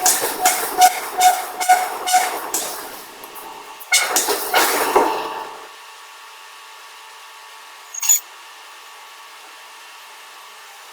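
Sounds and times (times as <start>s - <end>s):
forging hammer clanging on steel: 0.0s - 5.2s
machinery hum: 0.0s - 5.7s.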